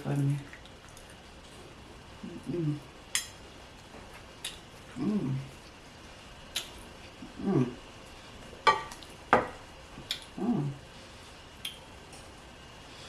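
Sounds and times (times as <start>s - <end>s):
closed-mouth humming: 2.2s - 3.1s, 4.4s - 5.9s, 6.5s - 8.2s, 9.9s - 11.8s.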